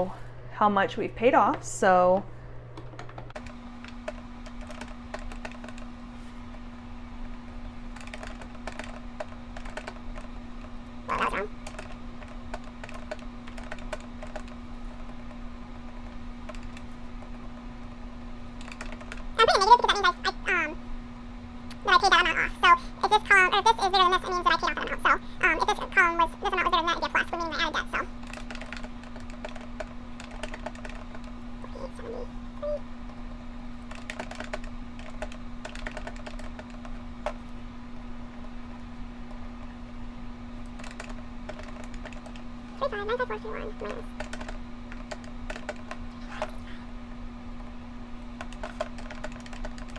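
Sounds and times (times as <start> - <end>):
low hum: 0.0 - 49.9
keypad keys tapping: 2.8 - 5.9, 11.1 - 15.4, 28.2 - 37.6, 40.6 - 42.4, 44.1 - 46.5, 48.4 - 49.9.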